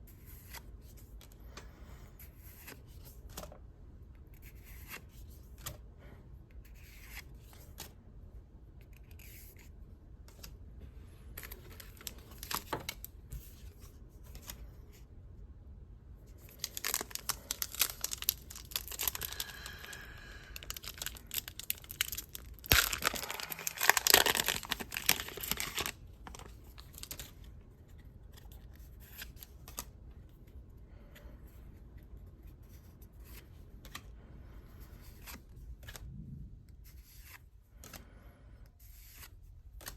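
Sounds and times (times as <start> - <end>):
packaging tearing and crinkling: 16.5 - 20.0, 20.6 - 27.2.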